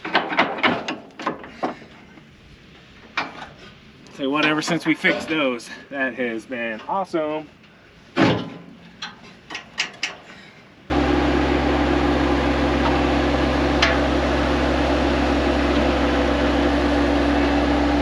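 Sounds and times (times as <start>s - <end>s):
machine engine droning: 10.9s - 18.0s.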